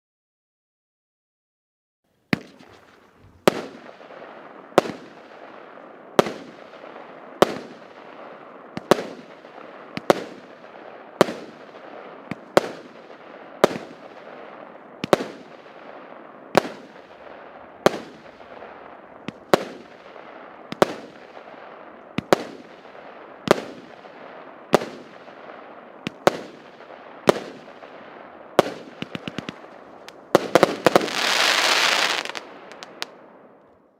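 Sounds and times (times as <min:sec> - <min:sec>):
firework cake bangs with crackle: 0:19.2 - 0:28.0.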